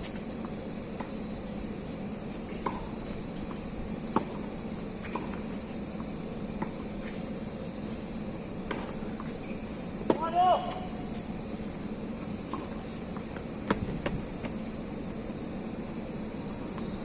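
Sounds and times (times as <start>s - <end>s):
background hum and hiss: 0.0s - 17.0s
tennis ball hitting racket and court: 2.6s - 7.7s, 8.3s - 11.2s, 12.2s - 14.6s.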